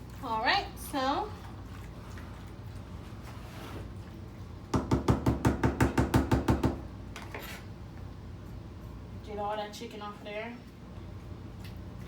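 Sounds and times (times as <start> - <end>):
utensil knocking against cookware: 4.8 - 6.8.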